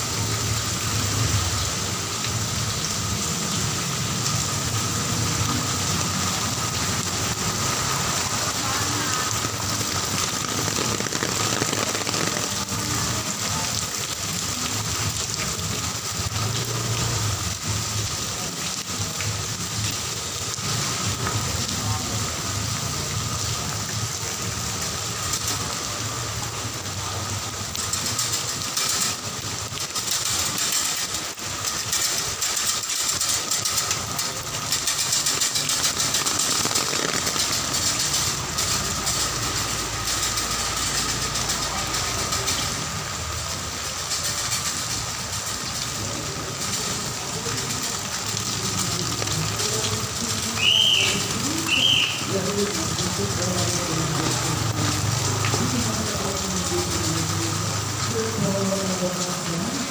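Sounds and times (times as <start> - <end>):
heavy rain falling: 0.0 - 59.9
vehicle engine humming: 6.5 - 14.4, 31.3 - 50.4.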